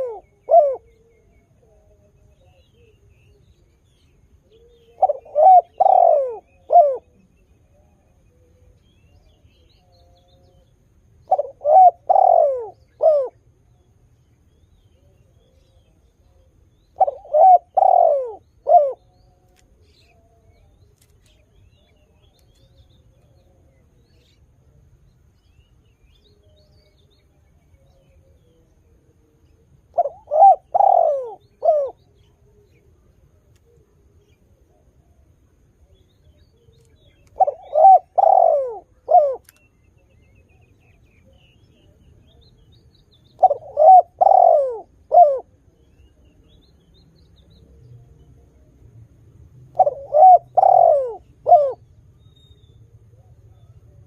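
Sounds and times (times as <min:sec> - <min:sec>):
dove cooing: 0:00.0 - 0:03.0, 0:04.4 - 0:10.6, 0:11.2 - 0:13.5, 0:15.0 - 0:19.4, 0:29.8 - 0:32.8, 0:37.2 - 0:39.6, 0:43.4 - 0:45.8, 0:49.7 - 0:52.0.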